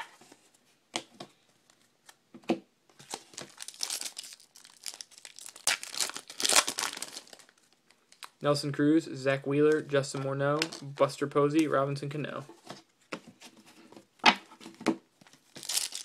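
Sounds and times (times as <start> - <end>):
foil wrapper tearing and crinkling: 3.1 - 8.3, 15.5 - 16.0.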